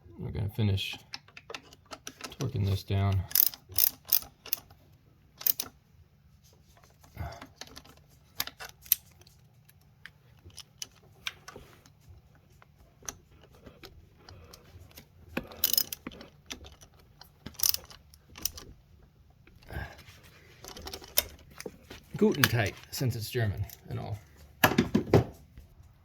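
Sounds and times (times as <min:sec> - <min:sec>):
socket wrench clicking: 0:03.3 - 0:04.7, 0:05.4 - 0:05.8, 0:15.4 - 0:18.7
tool clatter: 0:13.4 - 0:18.7, 0:20.6 - 0:23.0.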